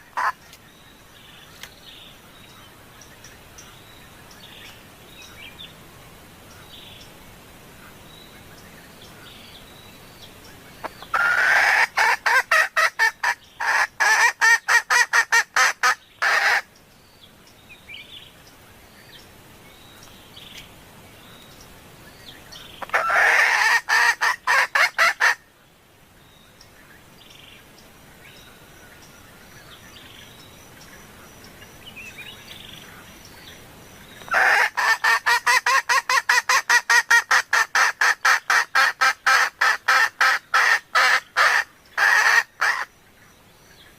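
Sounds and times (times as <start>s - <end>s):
hen clucking rapidly: 0.0s - 0.4s, 10.8s - 16.7s, 22.8s - 25.4s, 34.3s - 42.9s.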